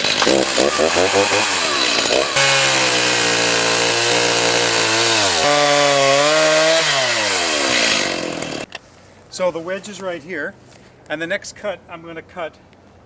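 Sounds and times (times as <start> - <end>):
chainsaw cutting wood: 0.0 - 8.7.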